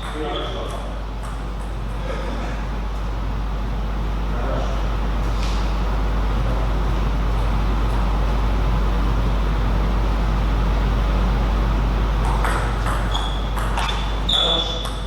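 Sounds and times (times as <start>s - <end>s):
short high squeak: 13.1s - 14.9s.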